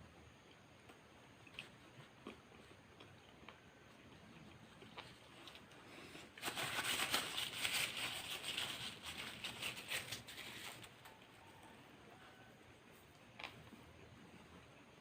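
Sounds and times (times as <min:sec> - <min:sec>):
paper wrapper crinkling: 0:06.3 - 0:11.3.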